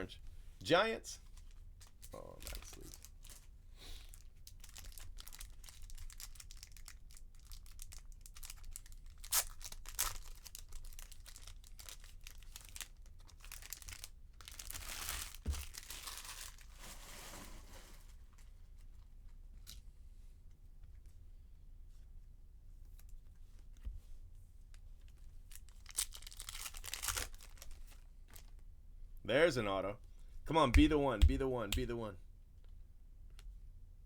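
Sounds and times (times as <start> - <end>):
cards rustling: 1.4 - 3.4
foil wrappers tearing and crinkling: 4.1 - 17.0, 25.5 - 28.5.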